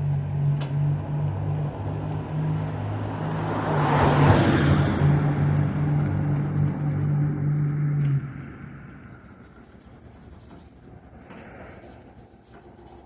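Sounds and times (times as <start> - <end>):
low mechanical hum: 0.0 - 4.0
small clicks: 7.5 - 9.3
faint scratching: 8.9 - 13.0.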